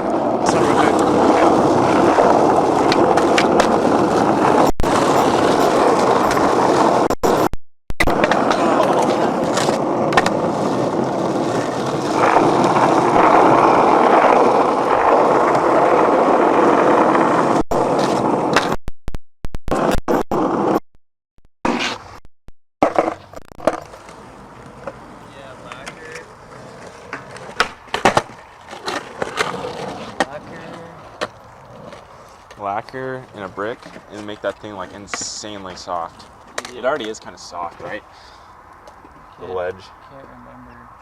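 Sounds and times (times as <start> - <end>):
skateboard wheels rolling on concrete: 0.0 - 18.8, 19.8 - 20.8, 21.7 - 22.2, 22.8 - 41.0.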